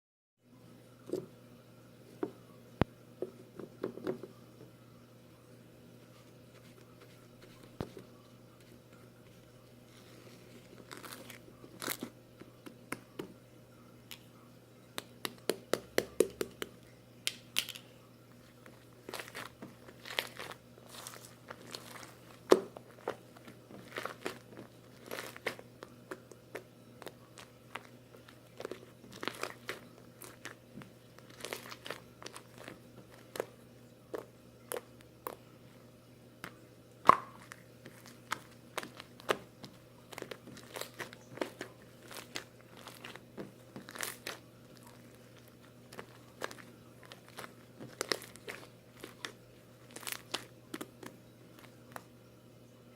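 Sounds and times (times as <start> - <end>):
slime crackling and popping: 19.0 - 30.6, 31.2 - 33.5, 37.0 - 52.0.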